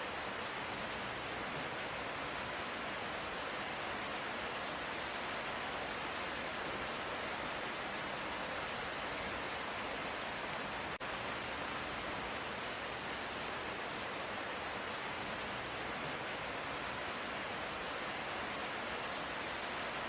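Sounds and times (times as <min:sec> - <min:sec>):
light rain hiss: 0:00.0 - 0:20.0.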